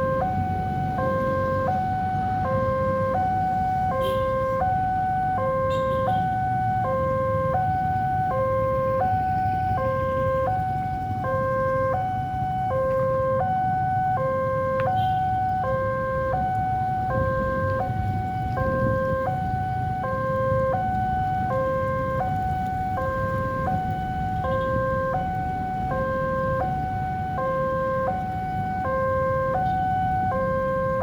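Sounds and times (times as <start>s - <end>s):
level crossing two-tone alarm: 0.0s - 31.0s.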